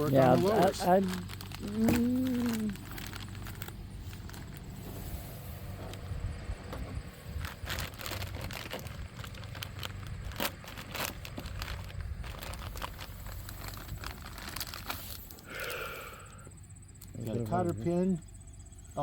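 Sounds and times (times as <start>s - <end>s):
plastic packaging crinkling: 0.0s - 4.8s, 7.3s - 15.5s.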